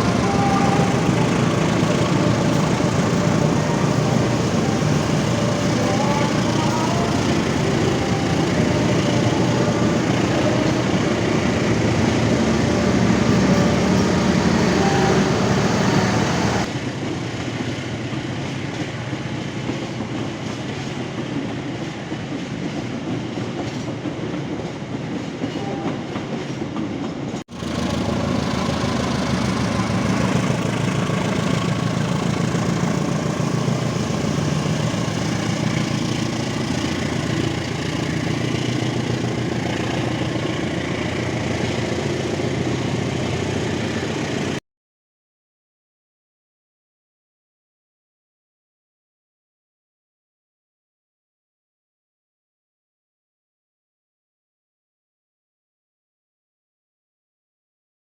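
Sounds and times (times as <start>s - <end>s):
train wheels rumbling on track: 0.0s - 44.6s.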